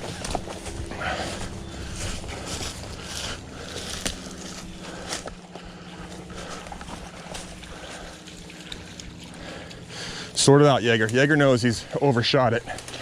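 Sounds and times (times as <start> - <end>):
footsteps rustling through leaves: 0.0 - 9.6.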